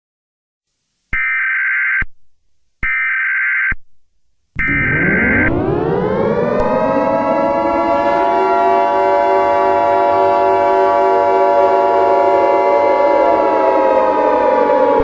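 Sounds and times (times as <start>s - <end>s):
steady alert tone: 4.6s - 9.4s
civil defense siren: 4.6s - 15.0s.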